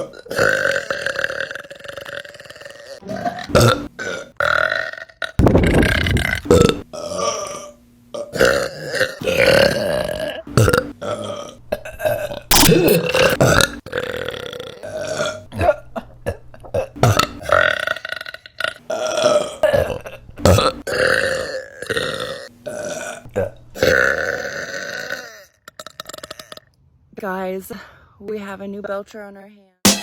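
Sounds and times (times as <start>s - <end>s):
woman burping: 8.2s - 18.2s.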